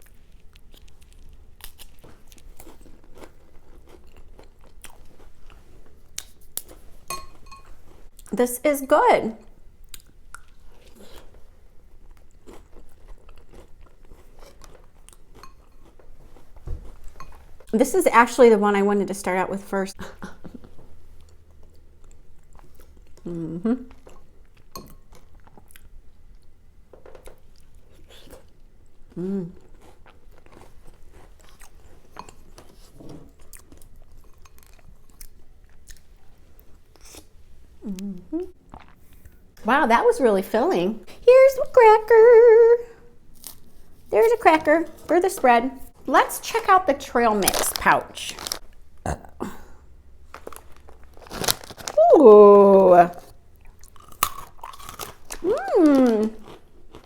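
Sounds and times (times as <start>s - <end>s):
person chewing food: 0.0s - 8.3s, 9.8s - 17.7s, 20.4s - 39.5s, 48.3s - 52.1s, 53.1s - 57.0s.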